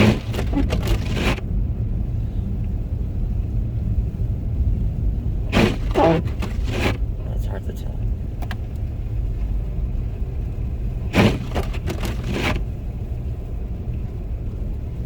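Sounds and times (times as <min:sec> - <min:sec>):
windshield wipers scraping: 0:00.0 - 0:01.4, 0:05.4 - 0:07.1, 0:11.0 - 0:12.6
car road and engine rumble: 0:00.0 - 0:15.0.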